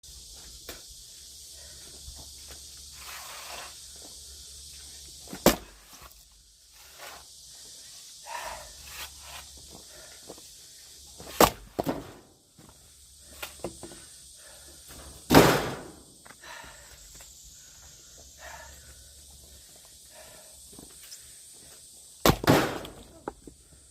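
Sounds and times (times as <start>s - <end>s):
axe splitting firewood: 5.3s - 6.1s, 11.2s - 12.2s, 22.2s - 23.4s.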